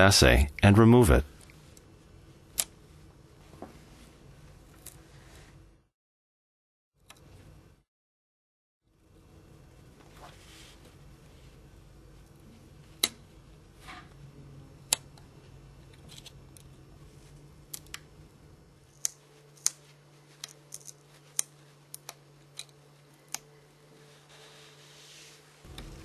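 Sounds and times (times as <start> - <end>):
small tools clicking on phone parts: 20.4 - 23.5.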